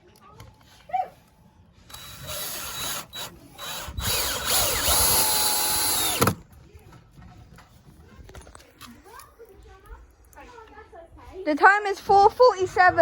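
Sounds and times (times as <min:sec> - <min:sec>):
power drill driving a screw: 0:01.9 - 0:06.4.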